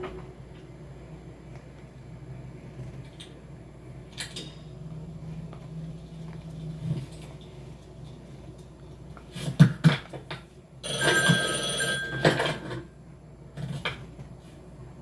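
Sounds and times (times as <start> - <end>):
ringing telephone-like tone: 10.8 - 12.8.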